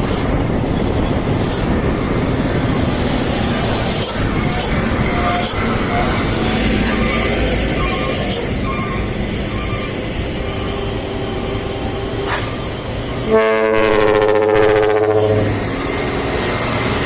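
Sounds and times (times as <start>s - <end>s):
road noise: 0.0s - 17.0s
truck engine: 0.0s - 17.0s
air horn blast: 13.2s - 15.6s.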